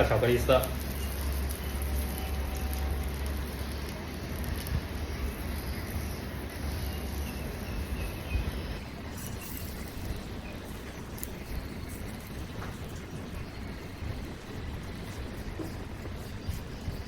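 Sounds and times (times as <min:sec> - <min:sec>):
gentle sizzle of frying: 0:00.0 - 0:17.0
low hum: 0:00.0 - 0:17.0.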